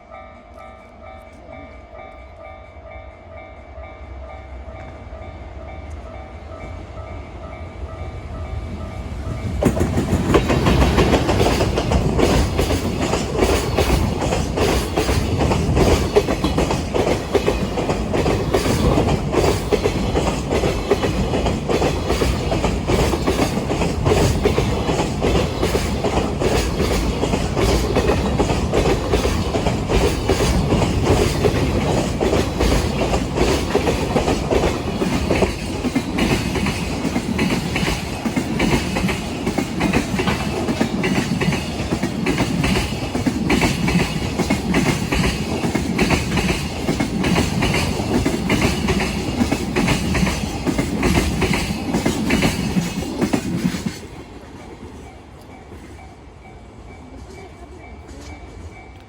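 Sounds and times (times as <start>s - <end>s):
freight train rumble: 0.0s - 59.0s
train wheels clattering over rail joints: 9.4s - 54.8s.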